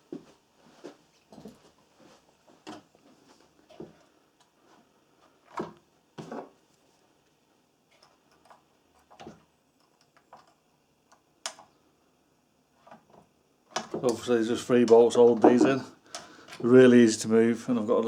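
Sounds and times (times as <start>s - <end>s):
clicks and knocks of handled parts: 7.9s - 11.8s, 12.8s - 15.1s.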